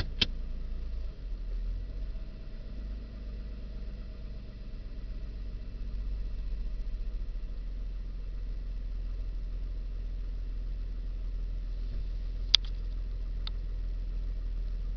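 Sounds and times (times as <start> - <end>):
car engine idling roughly: 0.0 - 14.9
sharp click: 12.5 - 13.6.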